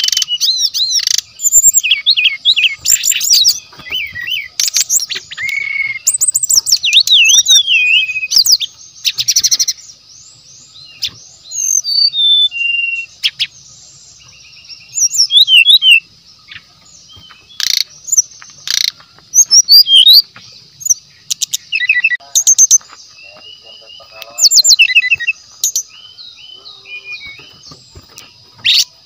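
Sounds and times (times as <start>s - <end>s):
bird singing whistled notes: 0.0s - 29.0s
rapid rattling bird trills: 0.0s - 29.0s.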